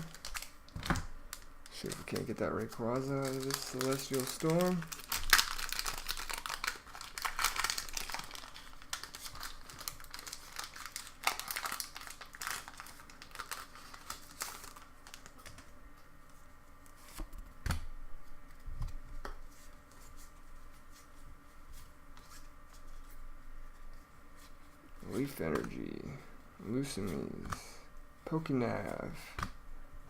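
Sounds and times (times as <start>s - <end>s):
foil wrapper crinkling and tearing: 0.0s - 15.7s.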